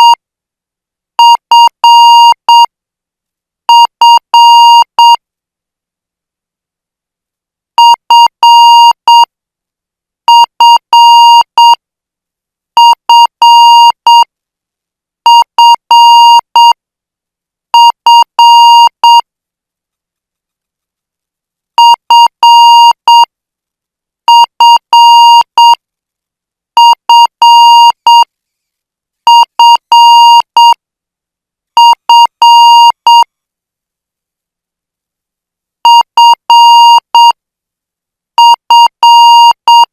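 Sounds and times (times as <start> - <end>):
morse code beeps: 31.8 - 33.3.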